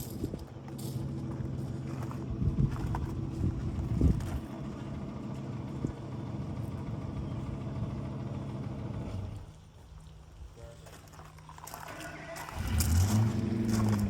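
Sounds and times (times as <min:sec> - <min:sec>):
tractor diesel engine running: 0:00.0 - 0:10.4, 0:11.1 - 0:14.0
engine knocks: 0:11.9 - 0:14.0.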